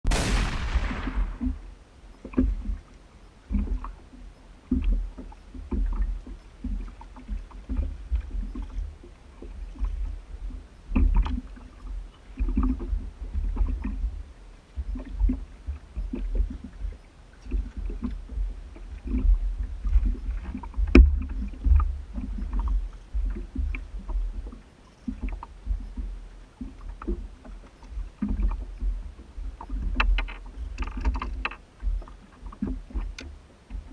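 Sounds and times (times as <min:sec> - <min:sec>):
low thumps: 0:00.0 - 0:01.8
water slapping boat hull: 0:00.0 - 0:33.9.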